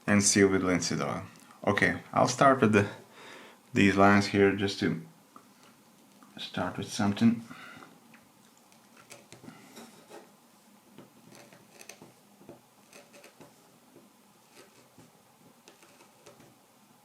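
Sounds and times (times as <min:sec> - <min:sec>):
knife scratching wood: 0:08.8 - 0:10.3, 0:11.2 - 0:12.2, 0:12.8 - 0:13.7, 0:14.4 - 0:16.6.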